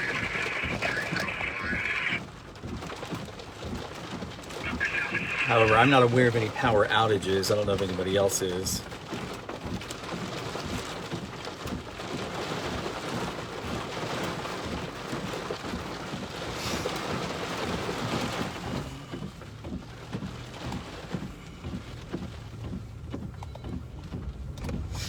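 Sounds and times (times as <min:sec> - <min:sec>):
rain falling: 0:00.0 - 0:25.0.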